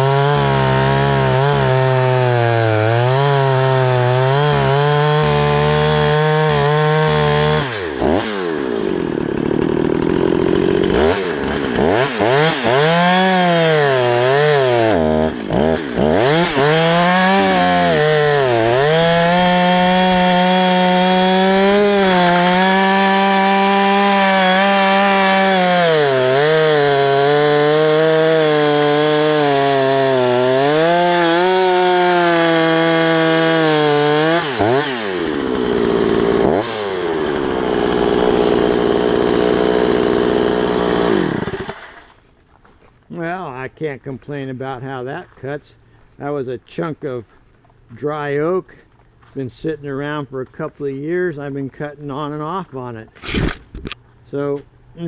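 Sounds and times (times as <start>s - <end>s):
chainsaw cutting wood: 0.0s - 42.2s, 53.0s - 54.0s.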